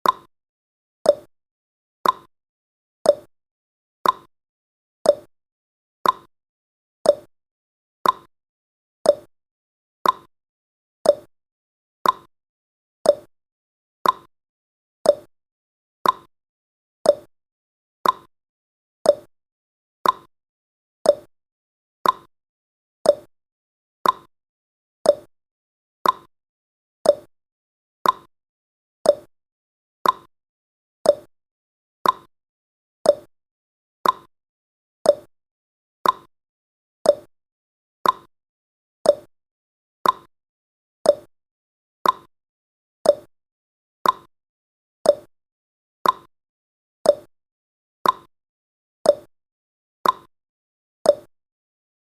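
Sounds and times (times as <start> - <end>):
clock ticking: 32.0 - 32.3, 34.0 - 34.3, 38.0 - 38.3, 40.0 - 40.3, 42.0 - 42.3, 44.0 - 44.3, 46.0 - 46.3, 48.0 - 48.3, 50.0 - 50.3.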